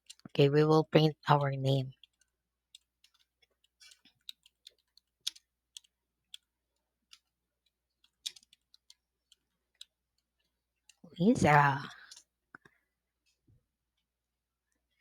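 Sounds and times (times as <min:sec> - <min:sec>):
computer keyboard typing: 0:08.0 - 0:09.9.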